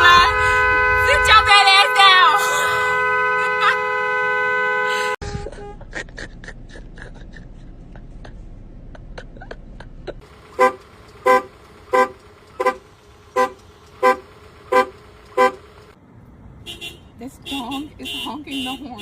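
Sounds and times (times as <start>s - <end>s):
car horn beeps: 0.0s - 5.9s, 10.5s - 15.7s, 16.6s - 19.0s.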